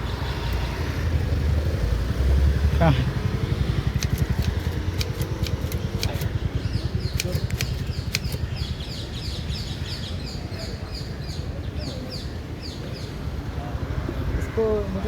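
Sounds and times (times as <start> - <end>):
bird chirping: 3.2 - 13.1
typewriter keys clicking: 3.9 - 6.3, 7.0 - 8.4.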